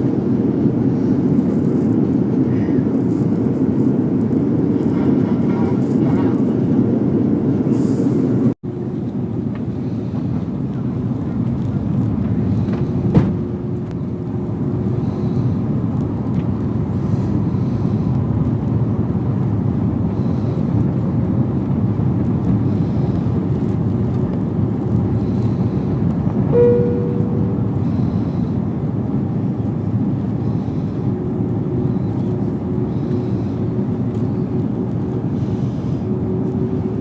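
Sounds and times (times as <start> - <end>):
airliner cabin engine noise: 0.0 - 37.0
short pitched tone: 26.5 - 27.8.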